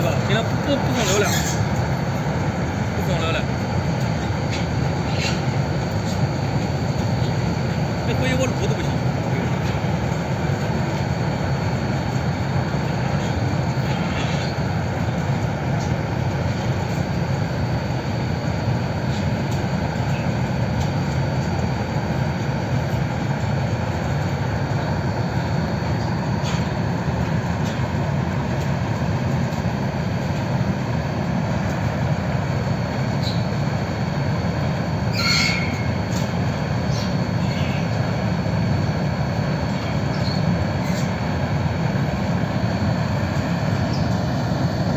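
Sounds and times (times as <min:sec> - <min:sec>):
furnace burner and fan rushing: 0:00.0 - 0:44.9
brief high squeak: 0:35.1 - 0:35.9.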